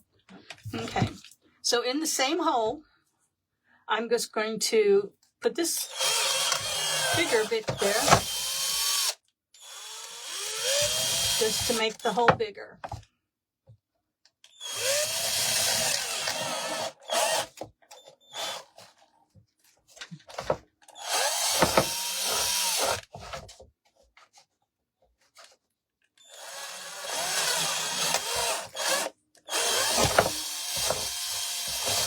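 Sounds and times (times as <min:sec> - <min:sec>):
power drill boring into wood: 0:05.8 - 0:12.2, 0:14.5 - 0:17.6, 0:18.2 - 0:18.8, 0:20.9 - 0:23.1, 0:26.2 - 0:32.0.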